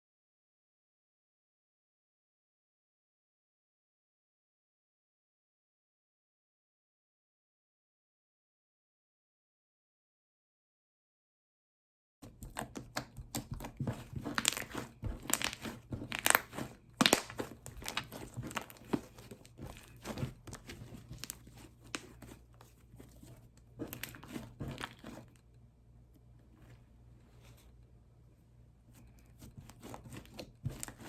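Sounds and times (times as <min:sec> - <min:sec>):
slime crackling and popping: 0:13.3 - 0:22.0.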